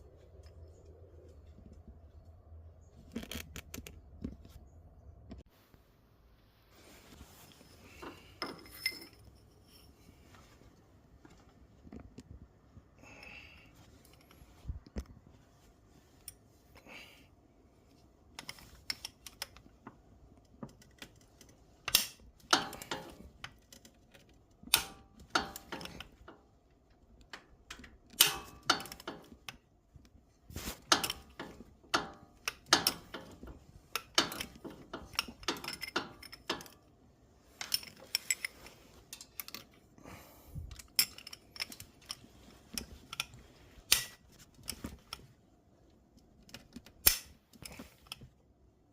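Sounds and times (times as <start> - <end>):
hand tools clinking on metal: 7.8 - 10.0, 21.9 - 23.4, 24.7 - 26.4, 28.2 - 29.5, 30.6 - 36.9.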